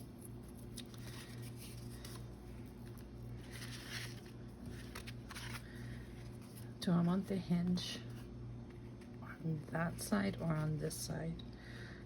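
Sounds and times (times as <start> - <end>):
paper and card rustling: 0.0 - 9.1
steady low hum: 0.0 - 12.0.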